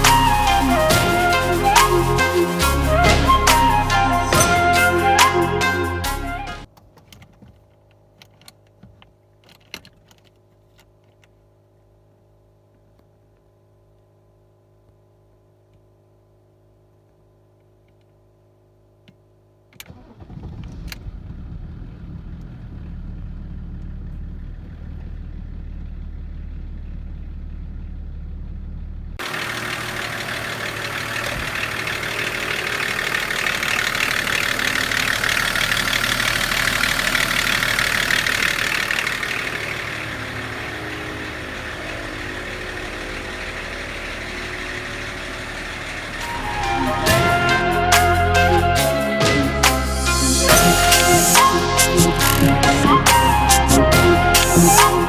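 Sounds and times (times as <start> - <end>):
diesel engine starting and idling: 0.0 - 6.7, 19.8 - 55.0
louder brighter engine sound: 21.0 - 55.0.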